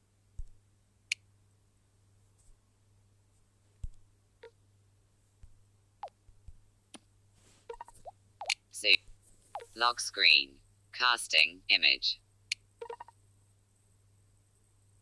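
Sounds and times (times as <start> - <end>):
faint clicks and taps: 0.3 - 1.2, 3.3 - 4.6, 5.4 - 9.8.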